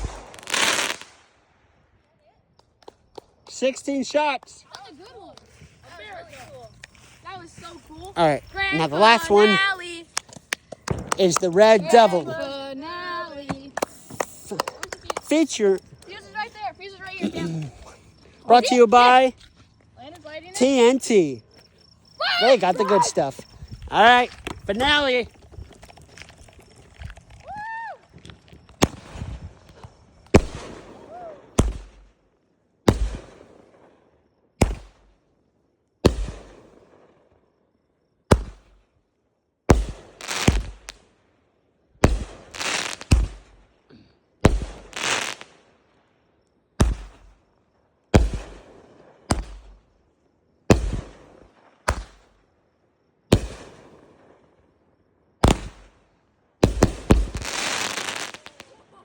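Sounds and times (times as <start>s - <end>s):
firework bangs: 0.0s - 1.7s, 8.5s - 19.3s, 22.5s - 32.2s, 32.8s - 35.1s, 36.0s - 37.3s, 38.3s - 38.8s, 39.7s - 41.0s, 42.0s - 43.7s, 44.4s - 45.8s, 46.8s - 47.4s, 48.1s - 49.9s, 50.7s - 52.4s, 53.3s - 54.6s, 55.4s - 58.9s.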